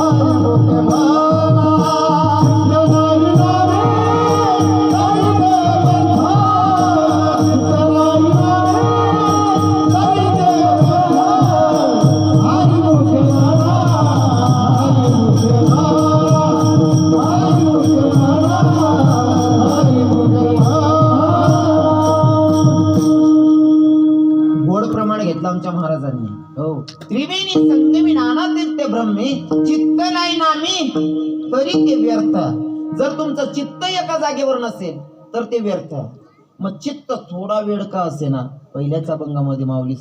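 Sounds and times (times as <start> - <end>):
hand cymbals striking: 0.0 - 24.5
voices singing: 0.0 - 24.6
harmonium drone and melody: 0.0 - 35.9.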